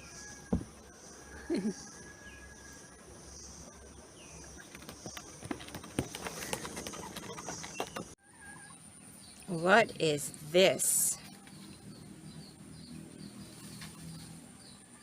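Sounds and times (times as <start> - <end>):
quick clicks and rustles: 4.6 - 8.2.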